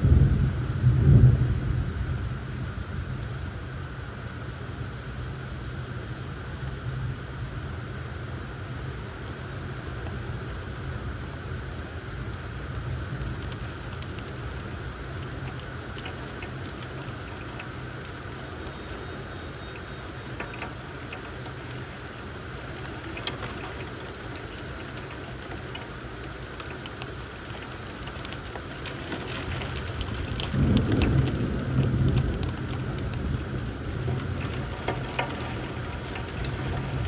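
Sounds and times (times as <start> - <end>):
low thunder rumble: 0.0 - 3.8, 12.0 - 37.0
steady rain: 0.0 - 37.0
drops tapping: 13.4 - 37.0.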